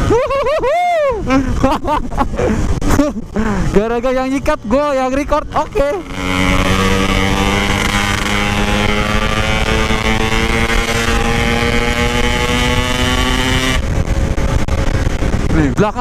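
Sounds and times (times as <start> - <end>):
motorcycle engine revving high: 4.4 - 16.0
wind on microphone: 5.4 - 16.0.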